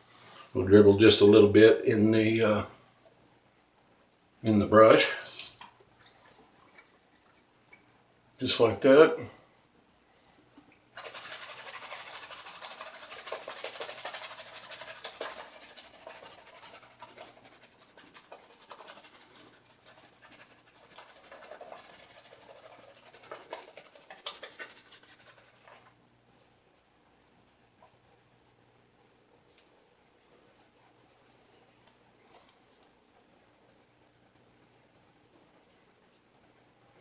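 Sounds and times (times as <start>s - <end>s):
shaving brush scrubbing lather: 11.0s - 25.9s.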